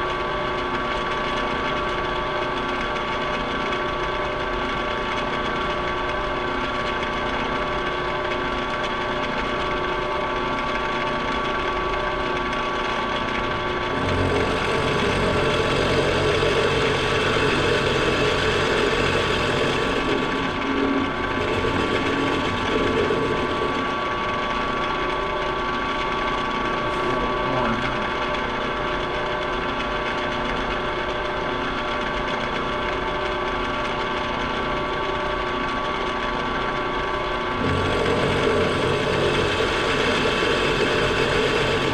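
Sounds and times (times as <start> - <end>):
milling machine gear whine: 0.0 - 41.9
cutter cutting metal: 14.0 - 24.0, 37.6 - 41.9.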